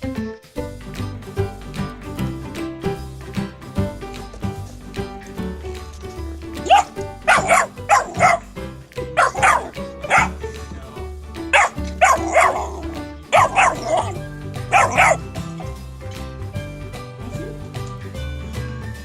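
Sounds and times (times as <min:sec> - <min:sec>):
background music: 0:00.0 - 0:19.0
dog barking: 0:06.6 - 0:08.5, 0:09.2 - 0:10.4, 0:11.5 - 0:15.7.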